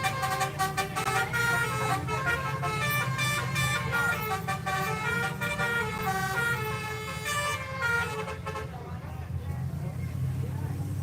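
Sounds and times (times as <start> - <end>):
musical air horn: 0.0 - 8.7
bus engine running: 0.0 - 11.0.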